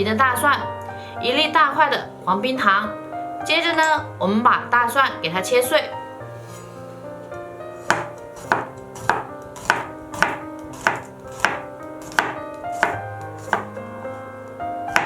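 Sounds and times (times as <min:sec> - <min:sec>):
knife chopping garlic: 0:07.8 - 0:13.8.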